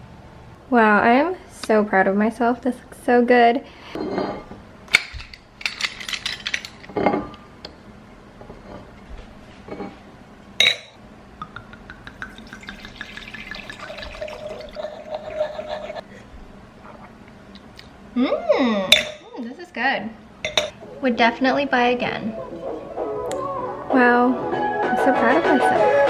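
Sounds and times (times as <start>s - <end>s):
glass clinking: 10.6s - 16.0s, 20.4s - 20.8s
liquid pouring into a glass: 11.5s - 16.0s.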